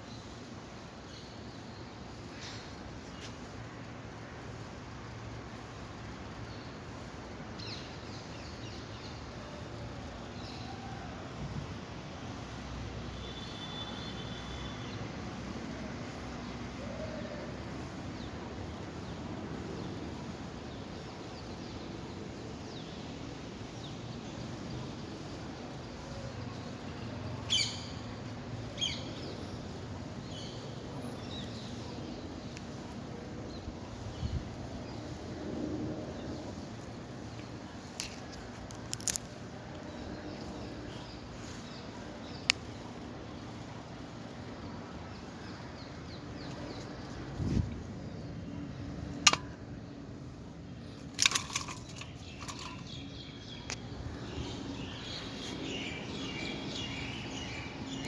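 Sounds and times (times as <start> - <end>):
steady background hiss: 0.0 - 58.0
birds chirping: 39.4 - 58.0.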